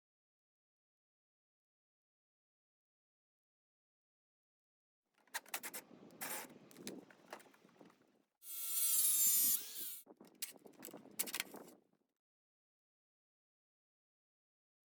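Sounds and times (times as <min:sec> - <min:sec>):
power tool whine: 0:08.5 - 0:10.0.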